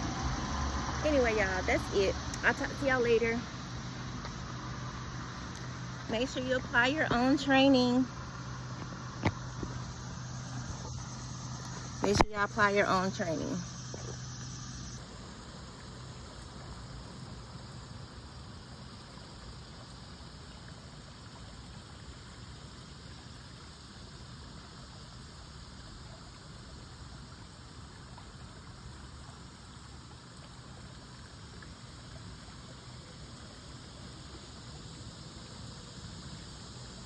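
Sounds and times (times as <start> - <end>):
even hiss: 0.0 - 26.2.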